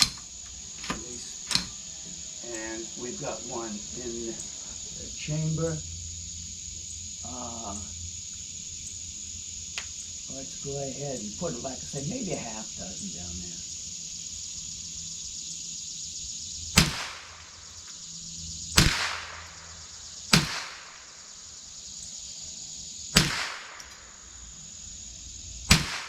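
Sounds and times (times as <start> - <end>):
rifle shots: 16.8 - 17.5, 18.8 - 19.6, 20.3 - 21.2, 23.1 - 24.3, 25.7 - 26.0.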